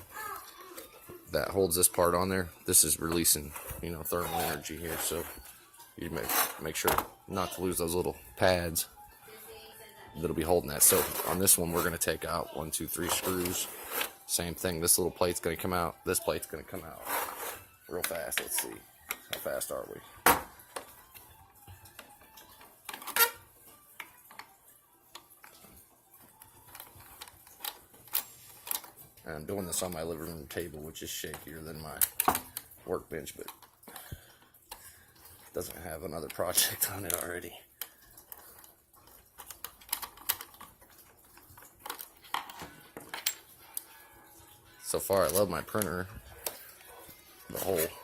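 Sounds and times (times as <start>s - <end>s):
small metal parts clicking: 36.2s - 44.5s.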